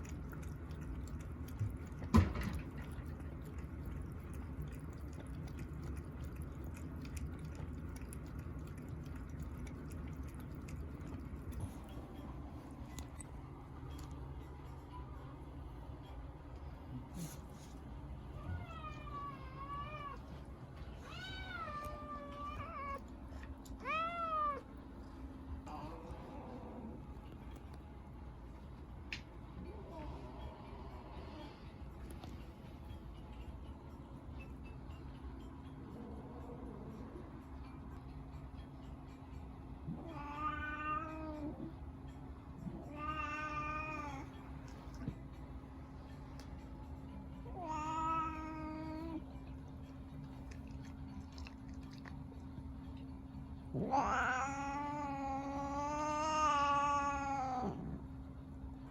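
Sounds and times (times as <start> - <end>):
cat meowing: 53.8 - 57.8.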